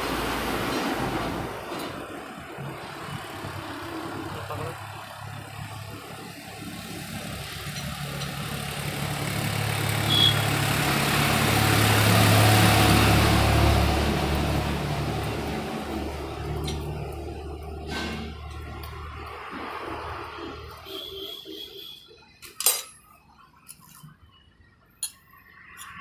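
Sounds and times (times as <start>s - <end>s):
low engine hum: 0.0s - 20.8s
motor vehicle passing: 0.0s - 20.8s.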